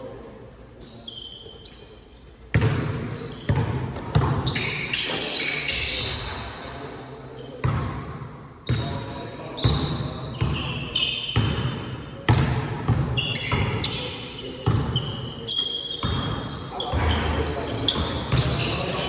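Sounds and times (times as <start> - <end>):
sneaker squeaks: 0.8 - 19.0
basketball bouncing on court: 2.5 - 4.7, 7.6 - 8.0, 11.4 - 14.0, 14.6 - 15.2, 16.0 - 19.0.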